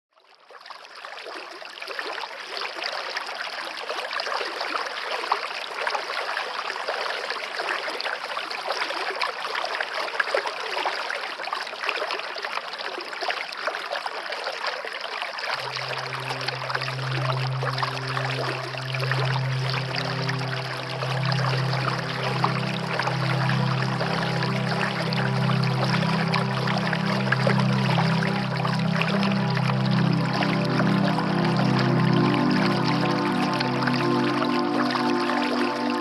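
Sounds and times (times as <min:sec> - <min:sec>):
low music drone: 0:15.6 - 0:36.0
waterfall rushing: 0:15.6 - 0:36.0.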